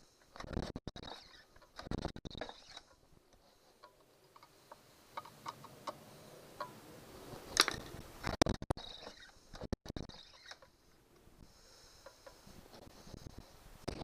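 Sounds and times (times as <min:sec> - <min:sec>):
small parts and tools clicking: 0:00.2 - 0:06.0, 0:07.5 - 0:10.8.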